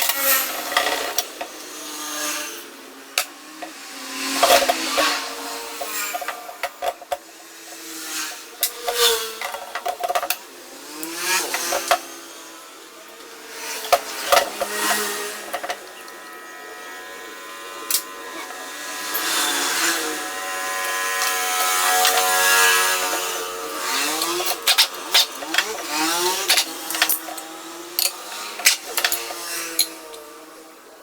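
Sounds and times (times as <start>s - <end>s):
hand tools clicking on metal: 17.9s - 18.1s, 20.8s - 30.2s.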